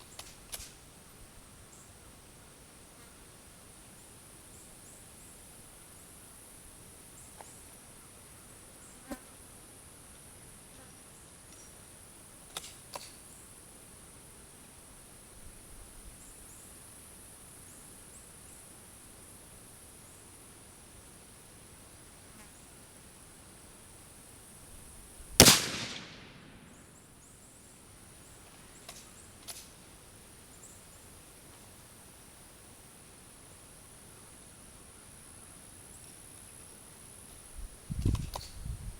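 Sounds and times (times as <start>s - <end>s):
insects buzzing: 0.0s - 38.6s
faint sharp clicks: 25.4s - 27.0s
rifle shot: 25.4s - 27.1s.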